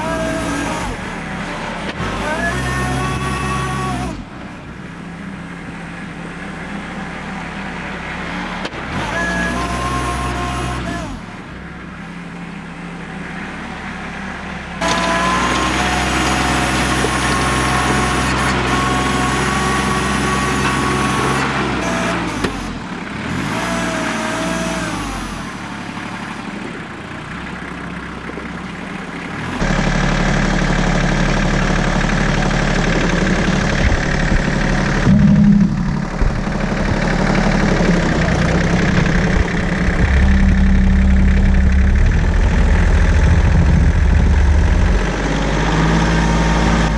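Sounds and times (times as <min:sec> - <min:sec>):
tractor engine running: 0:00.0 - 0:46.9
faint whine rising in pitch: 0:35.0 - 0:45.6.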